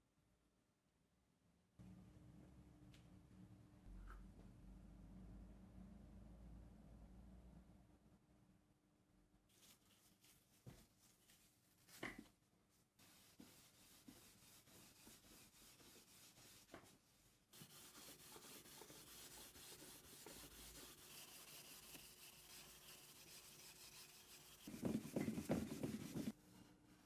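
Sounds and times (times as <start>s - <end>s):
faint rubbing on wood: 13.0s - 26.7s.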